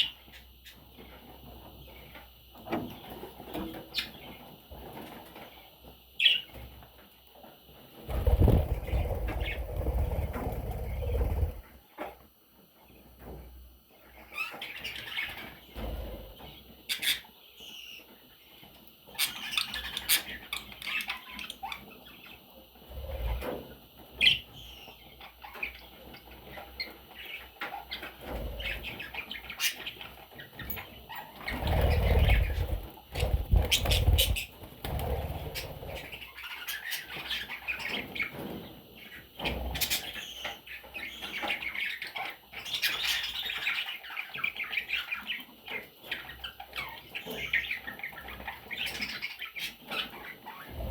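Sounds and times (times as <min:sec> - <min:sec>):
budgerigars chirping: 0:08.1 - 0:11.6, 0:31.0 - 0:38.3
wing flapping: 0:08.1 - 0:11.7, 0:31.4 - 0:36.3.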